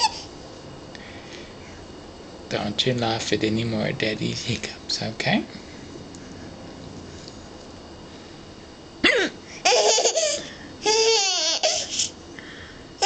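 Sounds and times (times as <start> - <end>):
baby laughing: 0.0 - 0.2, 9.6 - 12.1
man hiccuping: 9.0 - 9.4.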